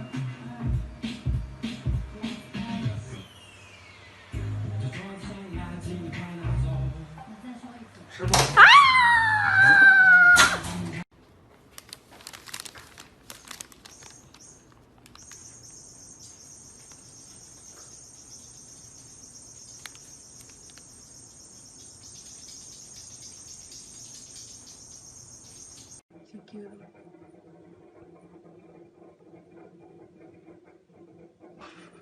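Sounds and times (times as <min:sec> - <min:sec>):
loud cry: 0:08.5 - 0:10.6
insects chirring trill: 0:13.3 - 0:26.0.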